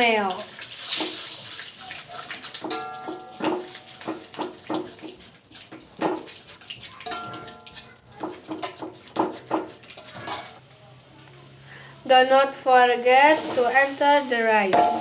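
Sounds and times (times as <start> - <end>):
eggs frying in oil: 0.0 - 15.0
spatula scraping a pan: 0.7 - 10.6, 13.0 - 15.0.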